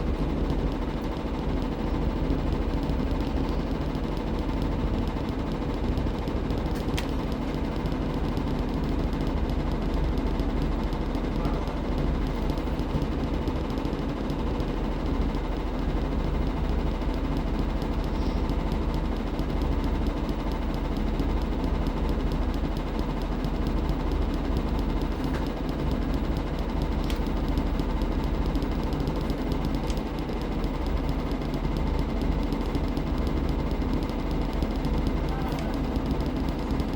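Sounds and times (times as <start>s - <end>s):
washing machine running: 0.0s - 36.9s.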